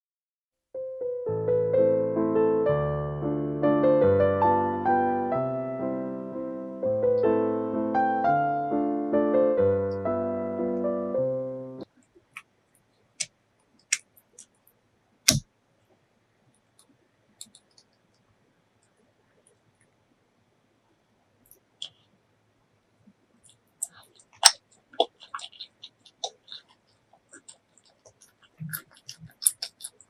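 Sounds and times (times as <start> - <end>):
electric piano music: 0.8 - 11.8
close-miked eating sounds: 16.4 - 20.0, 23.0 - 30.0.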